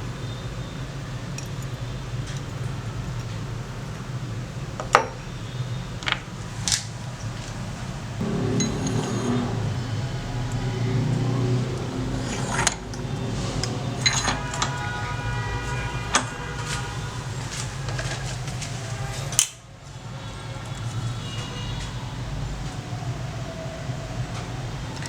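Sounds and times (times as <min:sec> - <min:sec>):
low mechanical hum: 0:00.0 - 0:19.4
metal tools clinking: 0:13.6 - 0:14.8.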